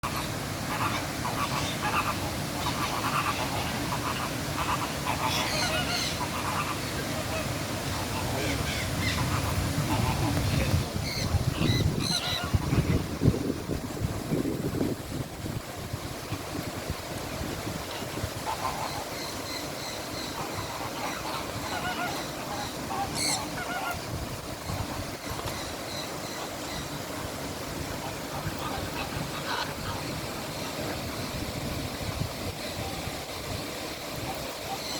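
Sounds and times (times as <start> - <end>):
birds honking: 0.1 - 13.1, 17.9 - 26.9, 28.0 - 31.1.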